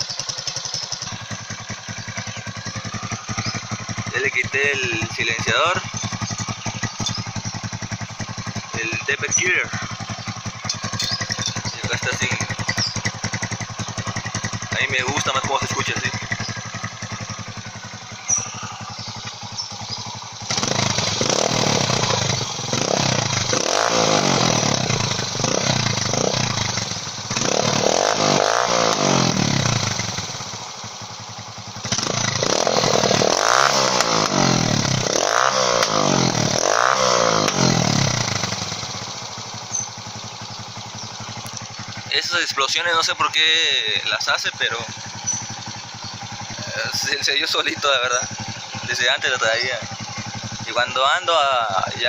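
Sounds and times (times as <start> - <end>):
motorcycle engine revving: 0.0 - 52.0
exhaust backfire pops: 31.8 - 36.4, 37.4 - 38.8.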